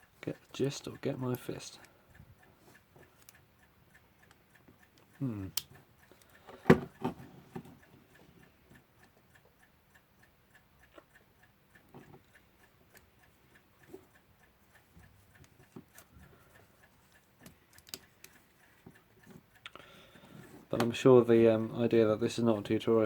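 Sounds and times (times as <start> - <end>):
mechanical clock ticking: 0.0 - 23.0
metal clock parts clicking: 8.8 - 21.0.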